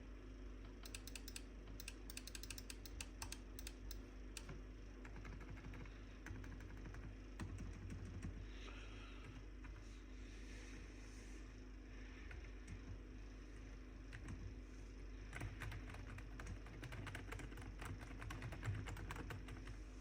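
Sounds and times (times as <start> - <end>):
soft keyboard keystrokes: 0.7 - 8.4, 15.3 - 19.8.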